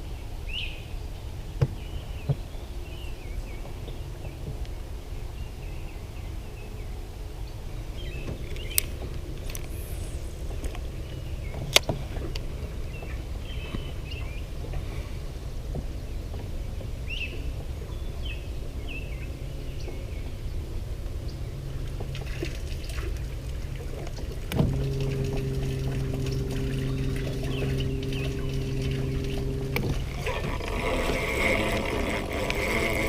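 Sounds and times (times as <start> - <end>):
low wind: 0.0 - 33.0
water noise: 7.0 - 33.0
electric motor humming: 9.4 - 10.9, 24.5 - 33.0.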